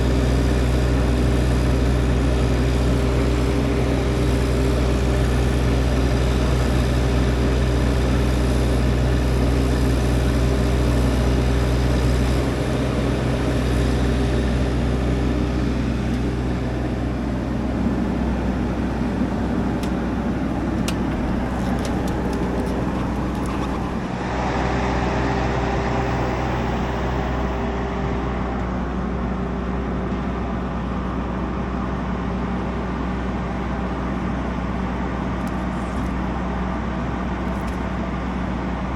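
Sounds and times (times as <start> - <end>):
engine running: 0.0 - 38.9.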